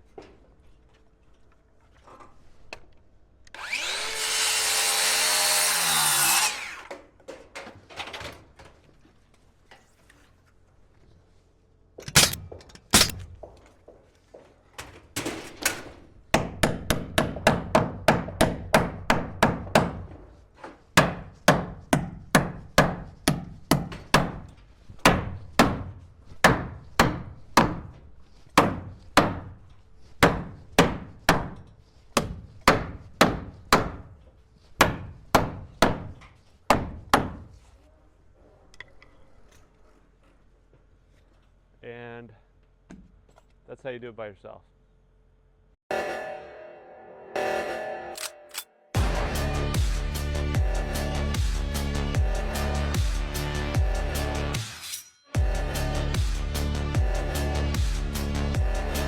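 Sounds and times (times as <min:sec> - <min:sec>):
circular saw cutting: 0:03.5 - 0:06.9
hammer driving nails into wood: 0:12.0 - 0:13.3, 0:21.0 - 0:27.9.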